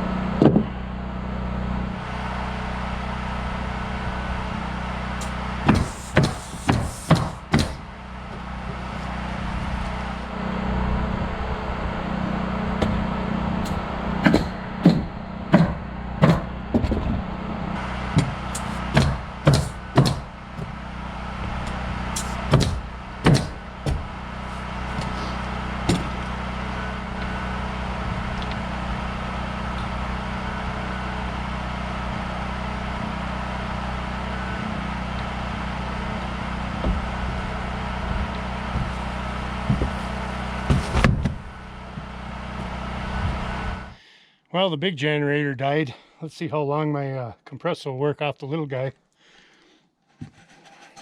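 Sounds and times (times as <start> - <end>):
generator engine humming: 0.0 - 44.1
nails hammered into shingles: 5.2 - 8.0, 14.2 - 16.9, 18.1 - 20.8, 22.1 - 24.2, 25.9 - 26.2.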